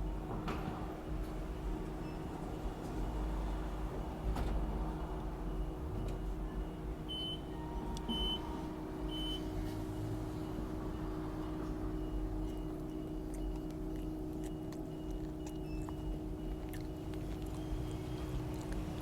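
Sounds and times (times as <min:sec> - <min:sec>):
low room hum: 0:04.9 - 0:19.0.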